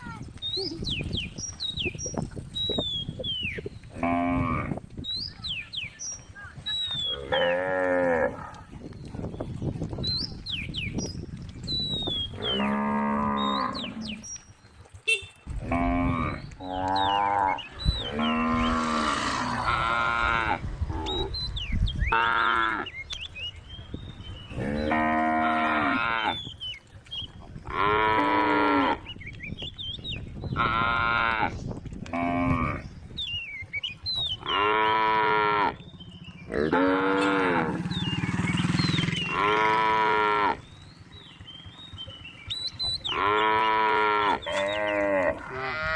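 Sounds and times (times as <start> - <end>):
cows mooing: 3.9 - 4.8, 7.0 - 8.7, 12.3 - 14.2, 15.6 - 21.4, 22.1 - 23.0, 24.5 - 26.4, 27.6 - 29.1, 30.6 - 32.9, 34.4 - 35.9, 36.5 - 40.8, 43.0 - 45.9.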